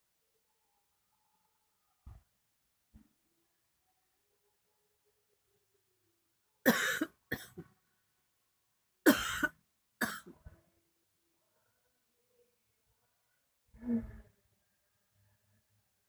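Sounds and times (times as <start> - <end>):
person coughing in sleep: 6.7 - 7.7, 9.1 - 10.4.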